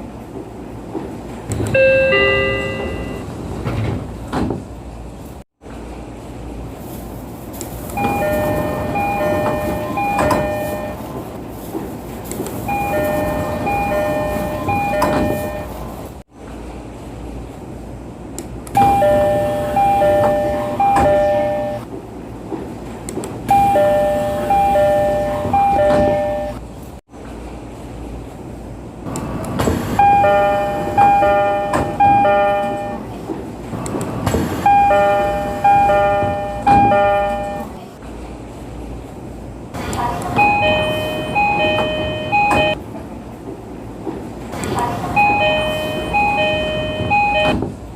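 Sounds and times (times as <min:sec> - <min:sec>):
train and platform noise: 0:00.0 - 0:47.9
train door chime: 0:01.6 - 0:03.4, 0:08.0 - 0:11.1, 0:12.6 - 0:15.8, 0:18.8 - 0:21.9, 0:23.5 - 0:26.6, 0:29.9 - 0:33.2, 0:34.6 - 0:37.8, 0:40.2 - 0:42.8, 0:45.1 - 0:47.8.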